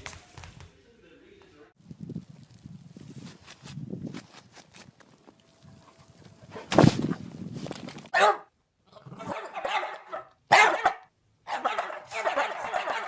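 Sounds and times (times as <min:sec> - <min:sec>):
dog barking: 0:08.1 - 0:08.5, 0:09.2 - 0:13.0.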